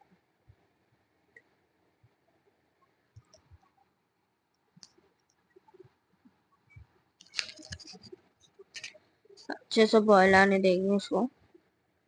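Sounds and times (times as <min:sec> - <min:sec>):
faint clicks and ticks: 0:01.3 - 0:09.6.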